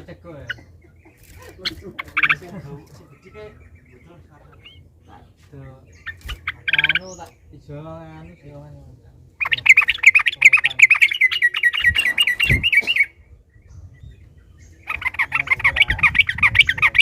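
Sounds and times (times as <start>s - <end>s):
bird singing rapid chattering song: 0.0s - 17.0s.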